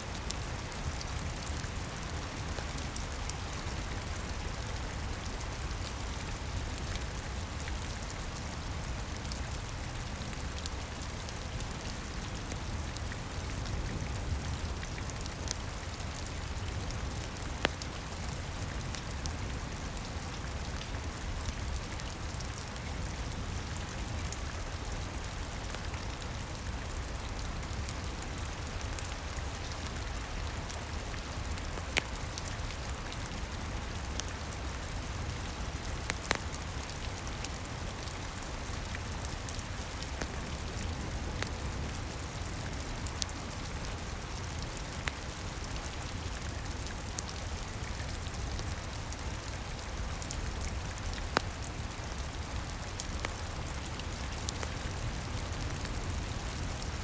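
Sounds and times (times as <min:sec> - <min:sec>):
steady rain: 0:00.0 - 0:57.0
wood fire crackling and popping: 0:34.4 - 0:36.8.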